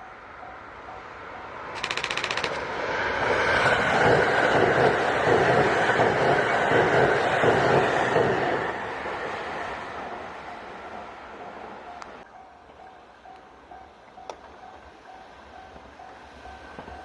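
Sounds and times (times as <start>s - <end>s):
crossing warning bell dinging: 0.0s - 2.6s, 10.5s - 17.0s
train wheels clattering on rails: 1.7s - 9.0s, 10.9s - 17.0s
fast rattling clicks: 1.8s - 2.7s.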